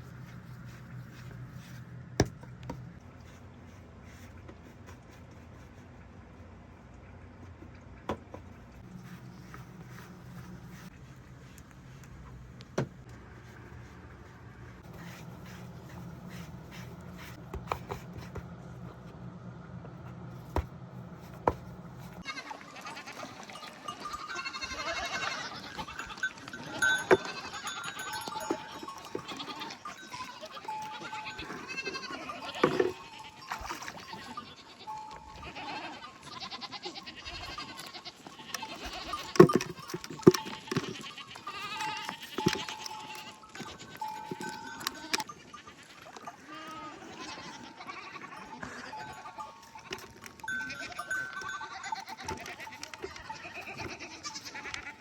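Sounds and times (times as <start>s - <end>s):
flock of livestock bleating: 22.2s - 39.4s, 40.5s - 55.0s.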